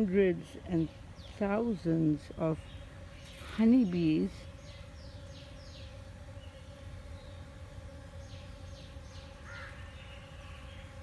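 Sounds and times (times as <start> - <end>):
honeybees buzzing: 0.0 - 11.0
bird chirping: 8.2 - 11.0.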